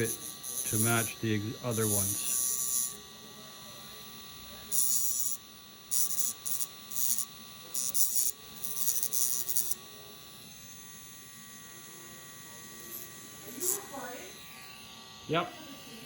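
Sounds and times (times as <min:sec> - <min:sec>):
high grinding hiss: 0:00.0 - 0:03.0, 0:11.7 - 0:16.0
rotary tool whine: 0:00.0 - 0:16.0.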